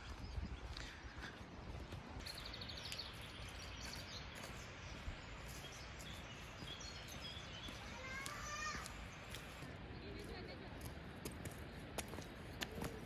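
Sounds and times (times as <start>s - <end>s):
bird chirps: 2.2s - 9.5s.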